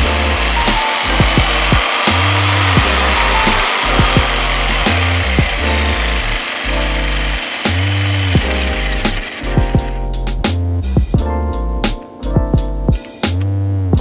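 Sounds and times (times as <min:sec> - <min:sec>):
jigsaw running: 0:00.0 - 0:10.0
background music with beat: 0:00.0 - 0:14.0.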